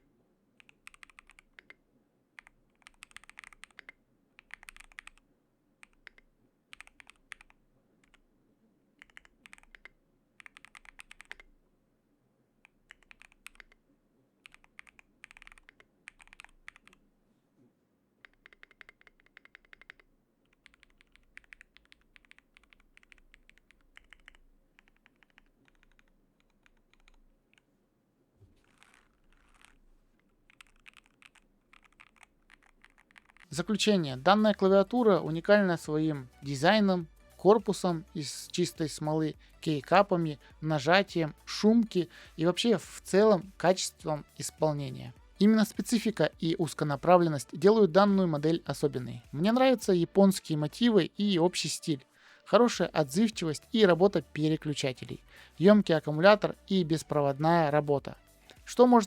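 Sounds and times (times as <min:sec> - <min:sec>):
soft muffled keyboard keystrokes: 0:00.6 - 0:01.8, 0:02.4 - 0:05.2, 0:05.8 - 0:08.3, 0:09.0 - 0:11.6, 0:12.6 - 0:13.8, 0:14.4 - 0:17.0, 0:18.2 - 0:27.7, 0:28.4 - 0:35.3.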